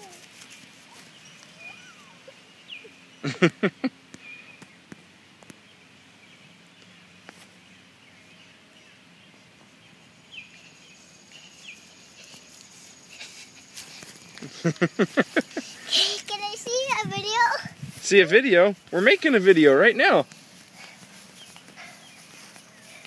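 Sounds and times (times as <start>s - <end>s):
faint outdoor background noise: 0.0s - 23.0s
small birds chirping: 0.0s - 23.0s.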